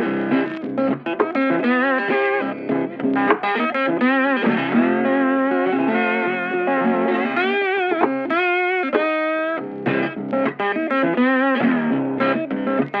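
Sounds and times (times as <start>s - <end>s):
electric guitar slow melody: 0.0s - 13.0s.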